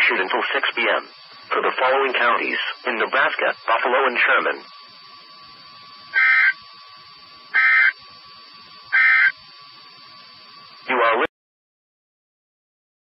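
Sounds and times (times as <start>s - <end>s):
digital data screeches: 0.0s - 6.9s, 7.5s - 8.0s, 8.8s - 9.4s
faint steady tone: 0.0s - 11.3s.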